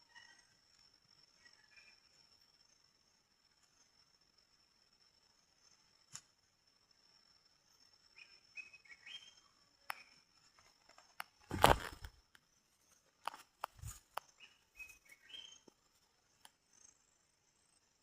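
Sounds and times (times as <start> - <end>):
rustling thump: 11.5 - 12.1.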